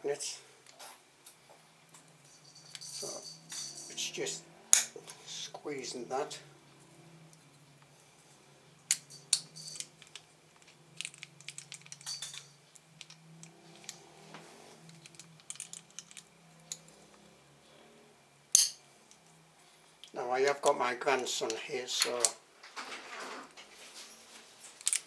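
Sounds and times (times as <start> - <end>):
metallic clicks and clinks: 1.9 - 5.6, 8.8 - 17.3, 18.5 - 19.3, 24.7 - 25.0.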